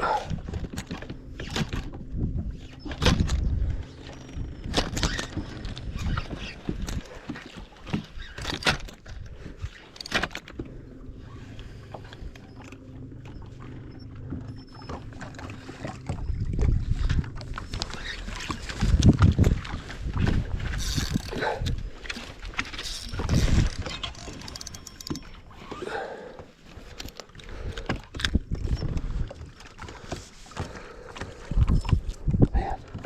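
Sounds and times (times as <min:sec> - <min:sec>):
knocks and clicks of fishing gear: 0:00.3 - 0:10.9, 0:11.5 - 0:25.5.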